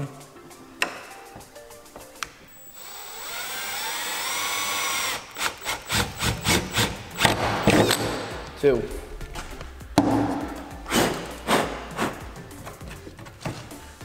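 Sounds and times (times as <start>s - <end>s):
power drill: 2.6s - 7.5s.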